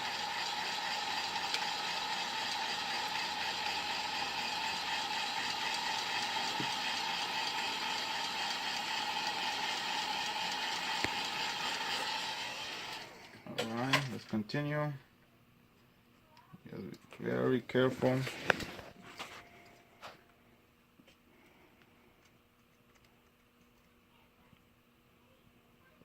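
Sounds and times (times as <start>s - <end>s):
heat gun fan whining: 0.0s - 14.2s, 17.1s - 20.3s.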